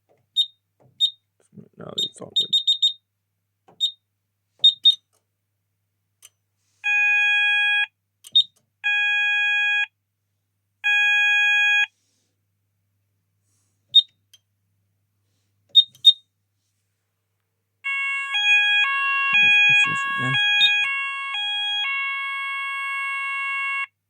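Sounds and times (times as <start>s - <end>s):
fire alarm steady tones: 6.8s - 7.9s, 17.8s - 24.0s
keypad buzzer beeps: 17.9s - 20.9s.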